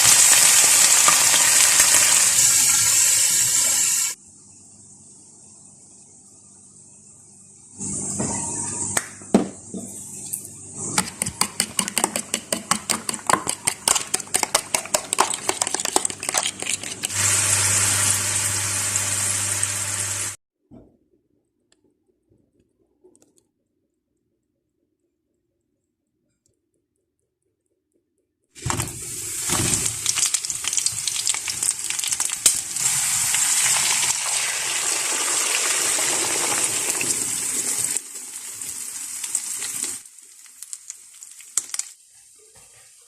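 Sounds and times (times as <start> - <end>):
fork beating eggs in bowl: 10.9 - 17.2.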